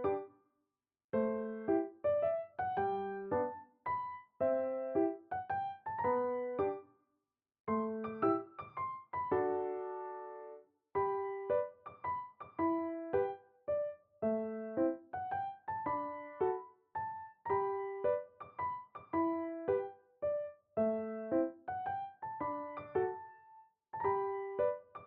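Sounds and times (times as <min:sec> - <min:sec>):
slow gentle piano melody: 0:00.0 - 0:00.4, 0:01.2 - 0:06.9, 0:07.7 - 0:25.0.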